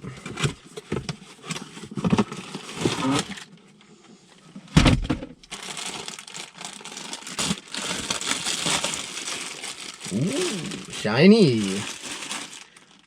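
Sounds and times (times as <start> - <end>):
cardboard and plastic packaging rustling: 0.0 - 3.8, 5.4 - 13.0
thump: 4.8 - 5.3.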